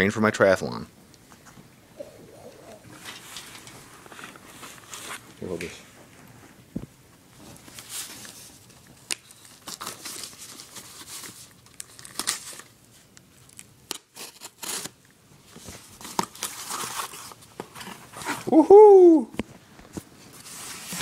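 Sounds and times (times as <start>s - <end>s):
cardboard and plastic tearing: 7.7s - 12.8s, 13.5s - 18.5s.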